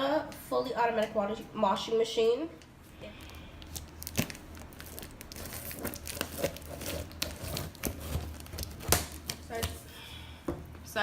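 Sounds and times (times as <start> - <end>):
packaging crinkling and tearing: 3.1 - 9.8.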